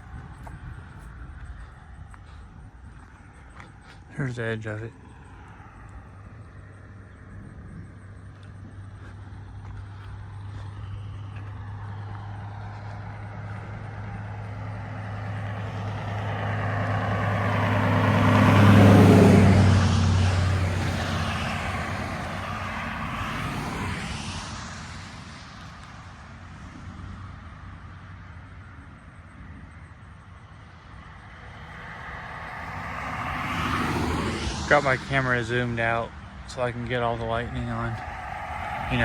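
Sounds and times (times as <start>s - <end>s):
vehicle driving past: 0.0s - 28.8s, 29.6s - 39.0s.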